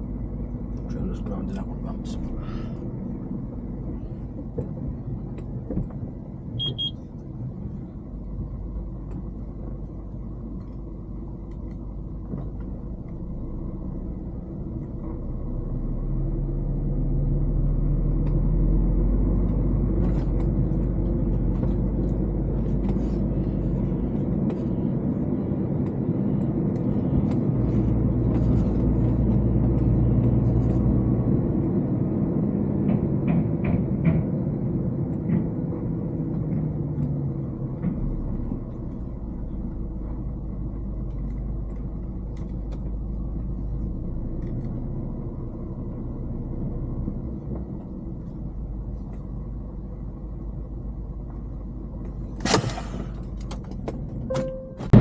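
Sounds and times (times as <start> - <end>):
short high beep: 6.6 - 7.0, 54.3 - 55.0.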